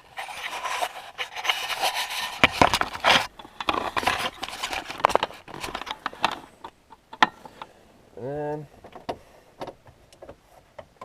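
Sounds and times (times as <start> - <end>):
hands rubbing plastic interior: 0.0 - 6.7.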